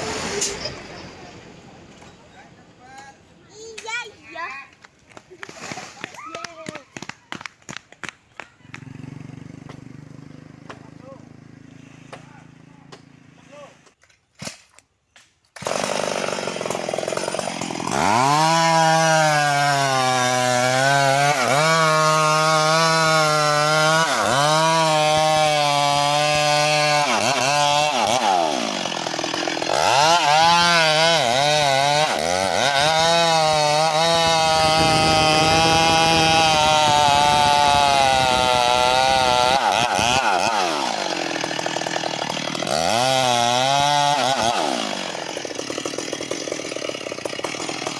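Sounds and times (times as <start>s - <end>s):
chainsaw cutting wood: 15.6s - 47.9s.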